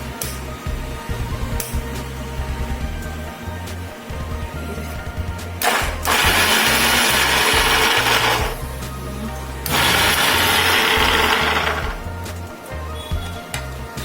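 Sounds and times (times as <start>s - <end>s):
background music: 0.0s - 14.0s
mixer grinder running: 5.6s - 12.2s.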